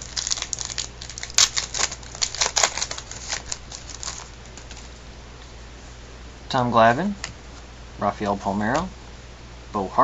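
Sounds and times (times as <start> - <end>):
wrapper crinkling and crackling: 0.0 - 4.9
steady low hum: 0.0 - 10.0.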